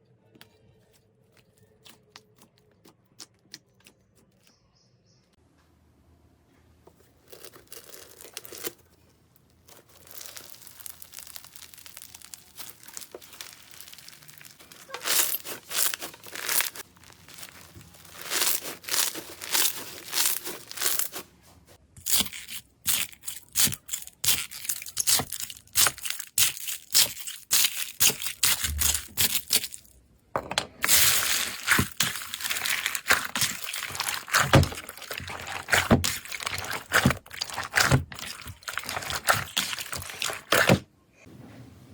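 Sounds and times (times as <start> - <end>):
slime crackling and popping: 9.7 - 21.2, 22.0 - 29.9, 30.8 - 40.8.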